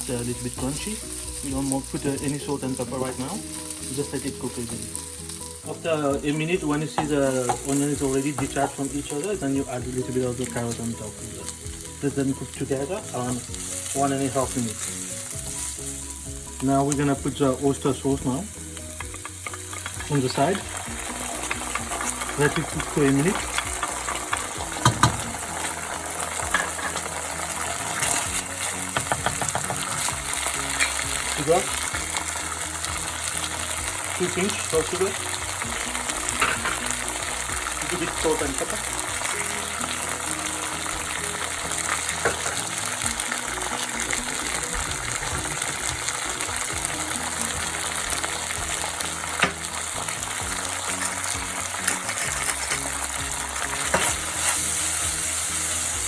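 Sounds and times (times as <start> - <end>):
vegetables sizzling in a pan: 0.0 - 56.0.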